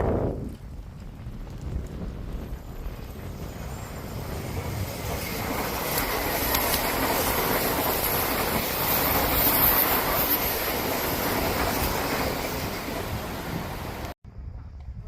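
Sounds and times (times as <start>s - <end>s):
electric train passing: 1.8s - 14.2s.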